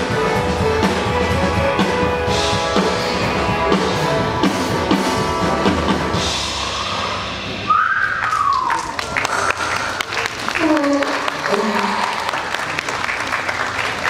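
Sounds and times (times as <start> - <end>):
live pop-rock band: 0.0 - 10.1.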